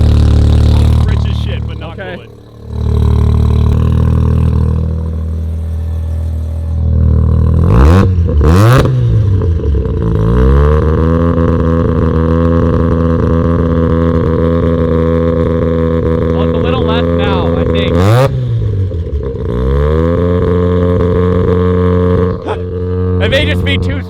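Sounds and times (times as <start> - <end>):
engine blips: 0.0 - 10.9, 16.2 - 24.0.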